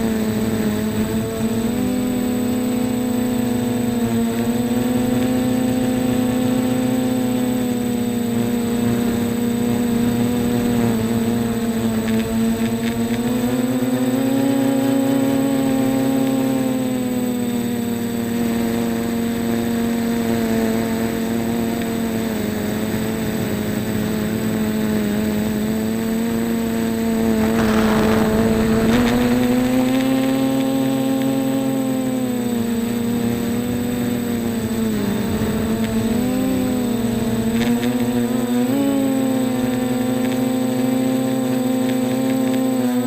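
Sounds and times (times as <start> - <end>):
drone propellers buzzing: 0.0 - 43.0
brief rushing noise: 27.3 - 30.3.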